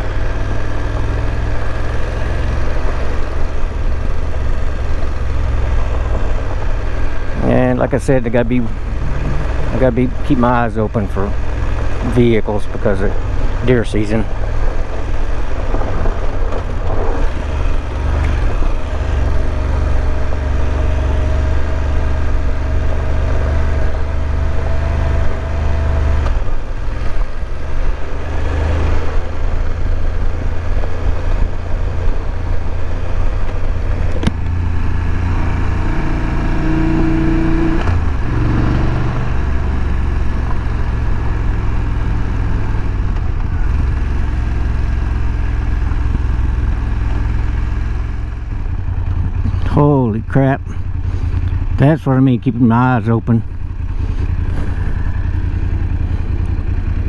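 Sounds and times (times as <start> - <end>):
motorcycle engine running: 0.0 - 57.0
wind rumble on microphone: 12.7 - 23.0.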